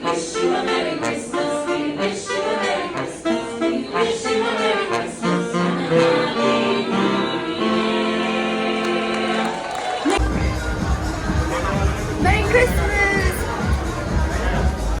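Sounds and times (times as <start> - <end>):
choir singing: 0.0 - 15.0
instrumental backing: 10.2 - 15.0.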